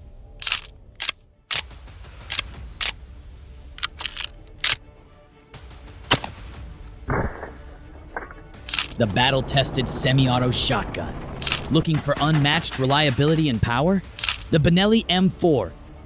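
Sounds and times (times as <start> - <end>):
background music: 0.0 - 16.0
sharp short clicks and hits: 11.4 - 14.5.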